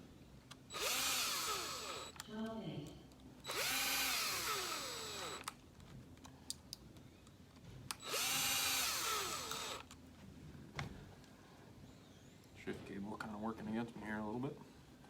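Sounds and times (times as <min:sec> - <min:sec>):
power drill driving screws: 0:00.7 - 0:02.2, 0:03.4 - 0:05.5, 0:08.0 - 0:09.9.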